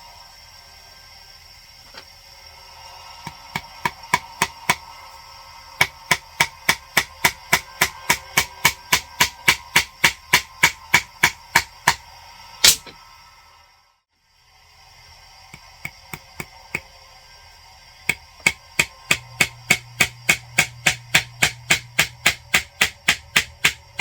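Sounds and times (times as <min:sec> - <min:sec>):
small hammer tapping a nail: 0:03.3 - 0:04.8, 0:05.8 - 0:12.0, 0:15.6 - 0:16.9, 0:18.1 - 0:24.0.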